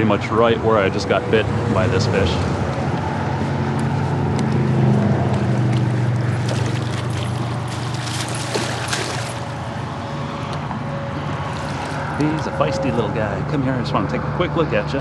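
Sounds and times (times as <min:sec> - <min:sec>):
traffic road noise: 0:00.0 - 0:15.0
water splashing and dripping: 0:05.3 - 0:10.0, 0:11.2 - 0:12.5.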